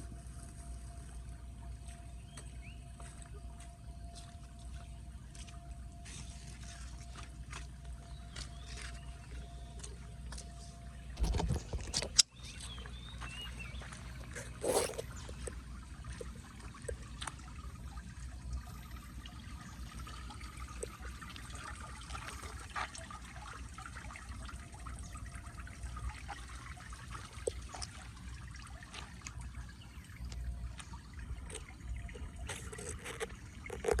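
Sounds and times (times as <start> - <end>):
water running into storm drain: 11.1 - 34.0.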